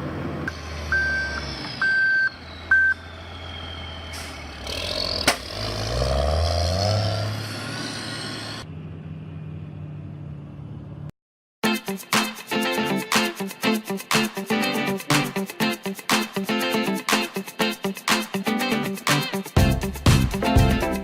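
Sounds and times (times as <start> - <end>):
heavy construction machinery engine: 0.0 - 11.1
reversing alarm beeping: 0.5 - 4.4.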